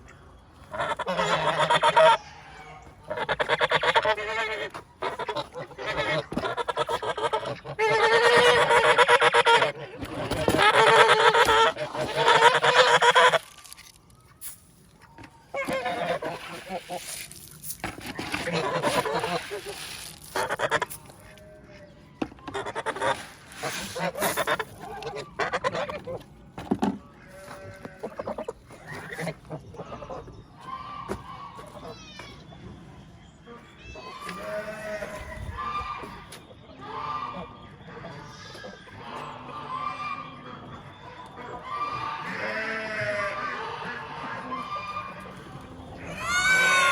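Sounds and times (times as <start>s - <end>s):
geese honking: 0.6s - 14.0s, 15.0s - 26.4s, 27.1s - 32.0s, 33.5s - 46.9s
goat bleating: 3.1s - 13.4s, 34.1s - 35.3s, 41.3s - 46.9s.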